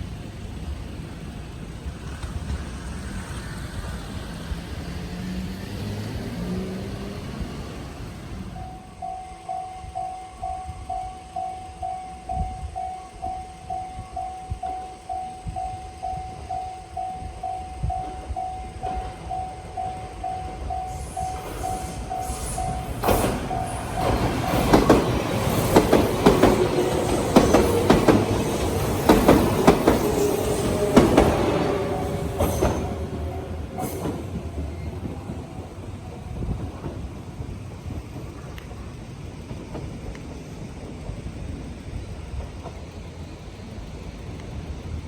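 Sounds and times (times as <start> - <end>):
train wheels clacking on rails: 0.0 - 45.0
level-crossing alarm ringing: 7.6 - 37.0.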